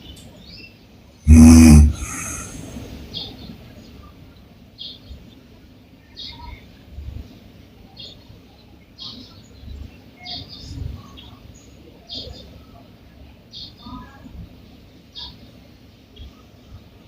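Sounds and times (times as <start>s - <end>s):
woman snoring: 1.3s - 2.8s.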